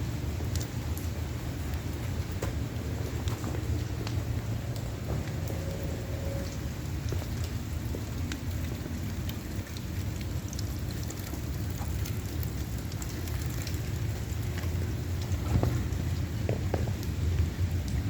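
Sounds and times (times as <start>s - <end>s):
heavy rain falling: 0.0s - 18.0s
raindrops ticking: 0.0s - 18.0s
low rumble: 1.4s - 9.0s.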